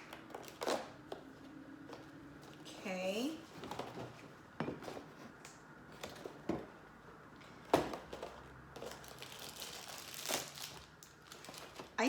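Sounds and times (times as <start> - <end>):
packaging crinkling: 0.0 - 1.1, 7.8 - 12.0.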